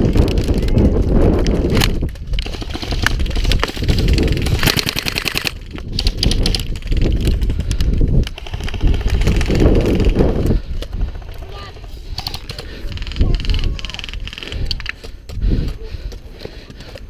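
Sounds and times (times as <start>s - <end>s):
wind buffeting microphone: 0.0s - 16.8s
airsoft gun full-auto bursts: 2.4s - 6.6s, 8.4s - 10.2s.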